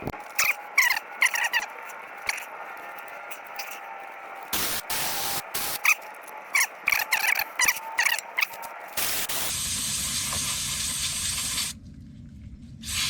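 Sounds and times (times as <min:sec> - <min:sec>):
high-pitched metallic squeaks: 0:00.2 - 0:04.4, 0:05.2 - 0:08.7.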